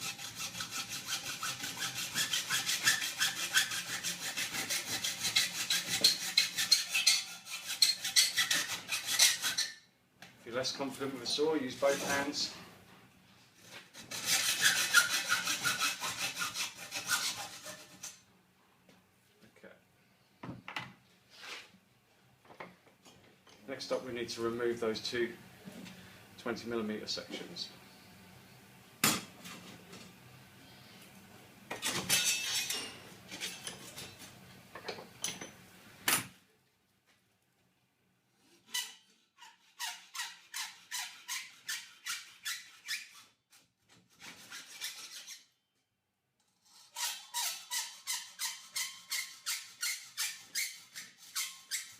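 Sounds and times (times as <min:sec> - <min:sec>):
hacksaw cutting metal: 0:00.0 - 0:09.8, 0:14.0 - 0:18.2, 0:31.7 - 0:34.2, 0:46.5 - 0:51.9.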